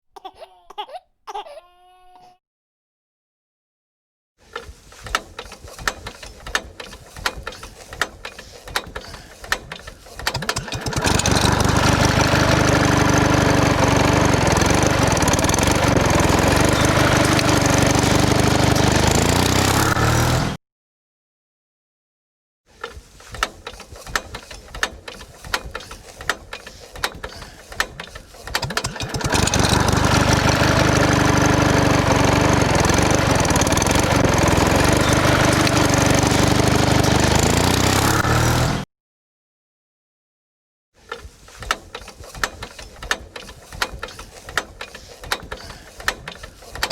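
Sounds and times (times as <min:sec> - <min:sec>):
small engine running: 0:06.2 - 0:20.6, 0:24.4 - 0:38.8, 0:42.0 - 0:46.9.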